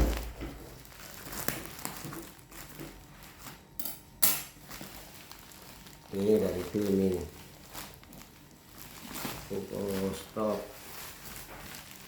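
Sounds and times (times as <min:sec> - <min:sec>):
scraping rustle: 0:04.6 - 0:12.0.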